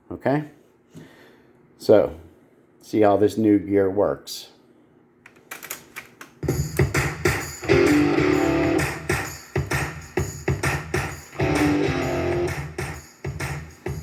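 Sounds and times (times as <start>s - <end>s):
guitar music through speakers: 6.8s - 13.8s.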